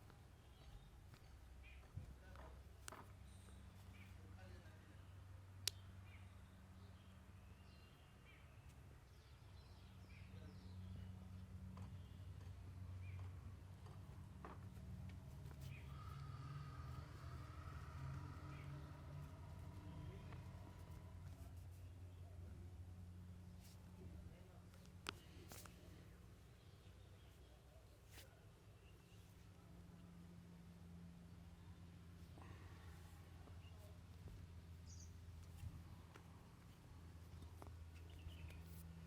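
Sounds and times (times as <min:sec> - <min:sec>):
faint birds chirping: 0:00.0 - 0:39.0
steady low hum: 0:10.1 - 0:27.6.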